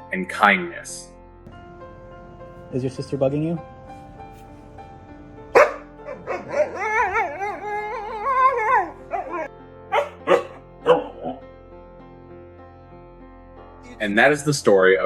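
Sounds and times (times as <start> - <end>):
dog howling call: 1.5 - 11.1
dog yipping: 1.5 - 11.1
dog barking: 1.5 - 11.2.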